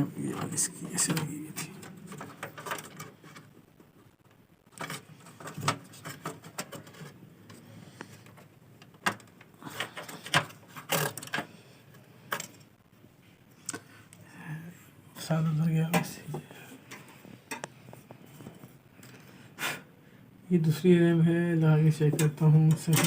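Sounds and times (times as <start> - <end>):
computer parts clicking and knocking: 0.3 - 3.9, 4.7 - 7.6, 8.2 - 11.6, 22.1 - 23.0.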